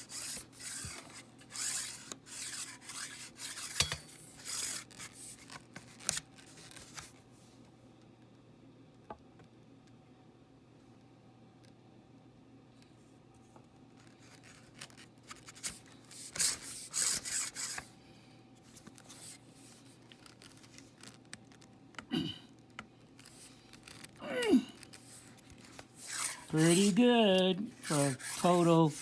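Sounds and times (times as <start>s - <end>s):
rubbing and scraping with clicks: 0.0s - 7.2s, 14.0s - 17.9s, 18.6s - 22.1s, 22.7s - 29.0s.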